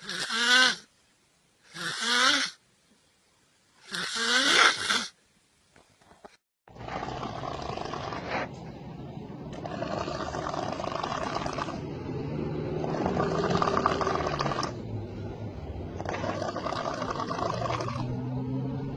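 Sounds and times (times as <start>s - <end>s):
person snoring: 0.0s - 0.9s, 1.7s - 2.6s, 3.9s - 5.2s, 9.6s - 11.9s, 12.6s - 14.8s, 16.0s - 18.2s.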